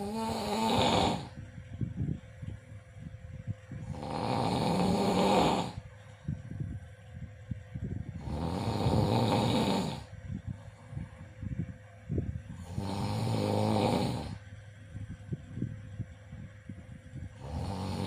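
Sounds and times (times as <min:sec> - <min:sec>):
loud snoring breaths: 0:00.0 - 0:01.4, 0:03.8 - 0:05.8, 0:08.2 - 0:10.1, 0:12.5 - 0:14.4, 0:17.3 - 0:18.0.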